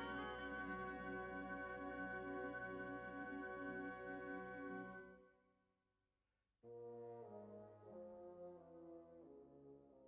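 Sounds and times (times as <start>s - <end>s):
music with sustained tones: 0.0s - 5.2s.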